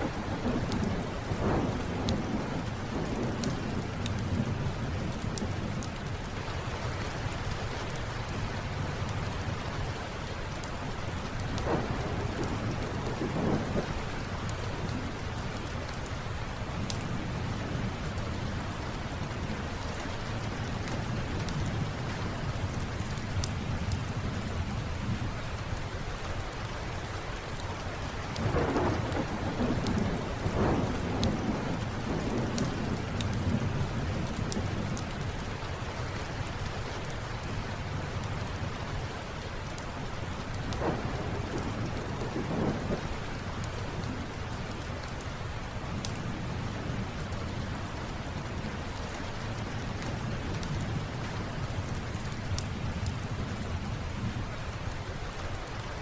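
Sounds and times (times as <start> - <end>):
thunder rumbling: 0.0 - 6.1, 10.9 - 25.4, 28.3 - 35.5, 40.3 - 48.8
steady rain falling: 0.0 - 56.0.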